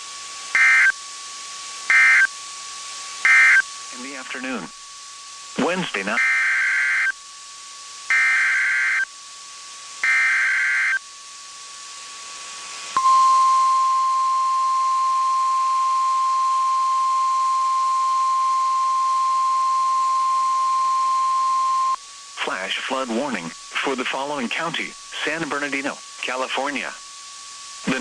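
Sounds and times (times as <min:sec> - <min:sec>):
harsh digital data bursts: 0:00.5 - 0:01.0, 0:01.9 - 0:02.3, 0:03.2 - 0:04.8, 0:05.6 - 0:07.2, 0:08.1 - 0:09.1, 0:10.0 - 0:11.0, 0:15.0 - 0:27.0
steady single-pitch attention alarm: 0:00.5 - 0:01.1, 0:01.8 - 0:11.6, 0:13.0 - 0:28.0.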